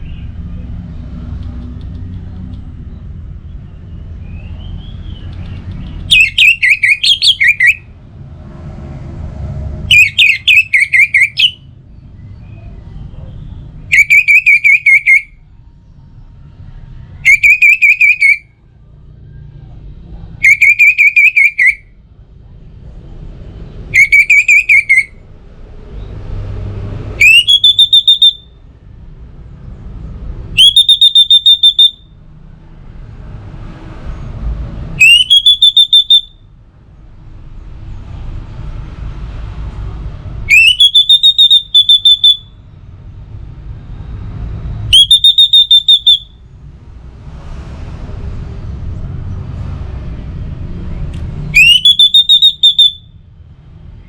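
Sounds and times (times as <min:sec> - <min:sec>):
thrush whistled song: 0:02.9 - 0:08.0, 0:09.9 - 0:12.8, 0:13.8 - 0:15.4, 0:17.1 - 0:18.6, 0:20.4 - 0:21.9, 0:23.9 - 0:25.2, 0:27.1 - 0:28.6, 0:30.5 - 0:32.2, 0:35.0 - 0:36.5, 0:40.5 - 0:42.6, 0:43.9 - 0:46.4, 0:51.5 - 0:53.2.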